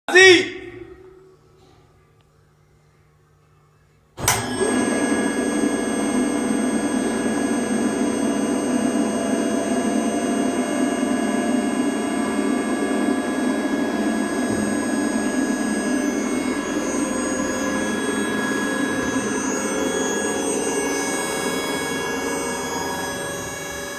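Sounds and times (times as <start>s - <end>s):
bladed machine whining: 4.4s - 23.9s.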